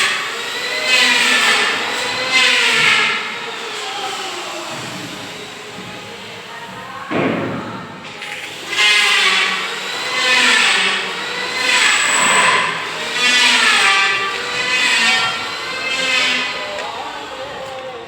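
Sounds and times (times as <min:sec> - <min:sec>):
tool working in repeated strokes: 0:00.0 - 0:06.3, 0:08.1 - 0:17.8
sudden knock: 0:07.1 - 0:07.8.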